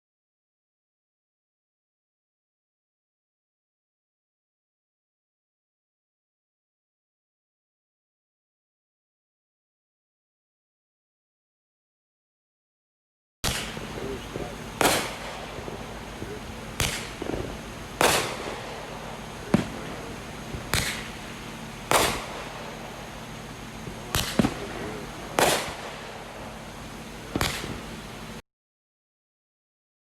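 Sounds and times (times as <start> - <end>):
fireworks bangs: 13.4 - 28.4
steady low hum: 13.4 - 28.4.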